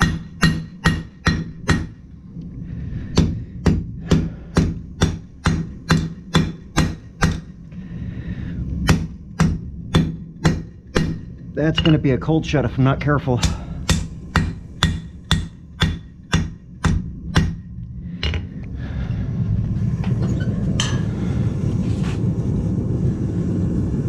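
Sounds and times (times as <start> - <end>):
hammer striking steel on anvil: 0.0 - 2.0, 3.2 - 7.5, 8.8 - 12.2, 13.4 - 17.6.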